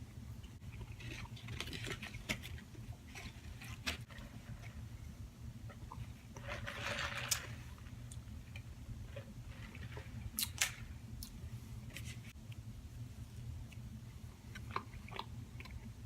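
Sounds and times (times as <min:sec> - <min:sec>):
steady low hum: 0:00.0 - 0:16.0
wrapping rustling: 0:06.4 - 0:07.9.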